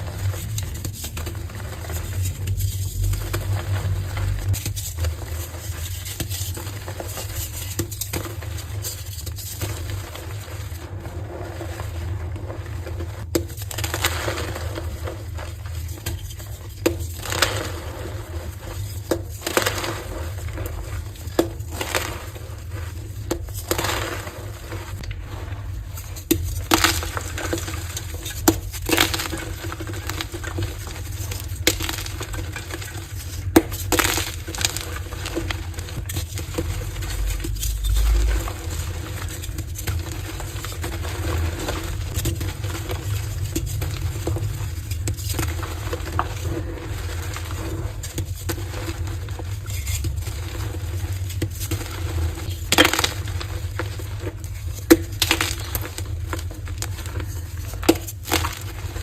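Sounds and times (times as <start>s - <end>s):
chalk blocks crunching and cracking: 0.0s - 59.0s.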